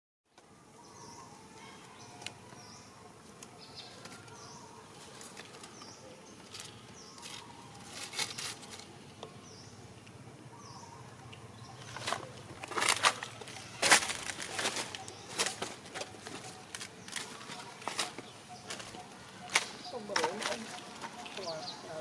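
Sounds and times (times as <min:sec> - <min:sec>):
small bird chirping: 0:00.8 - 0:22.0
rustling and crackling clicks: 0:11.8 - 0:21.5.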